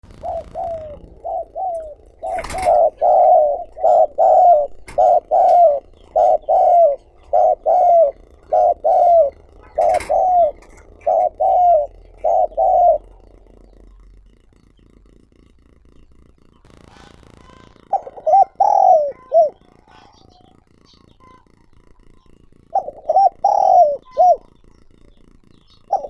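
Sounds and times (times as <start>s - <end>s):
dove cooing: 0.0s - 16.7s, 17.3s - 26.0s
sharp clicks: 0.0s - 20.1s.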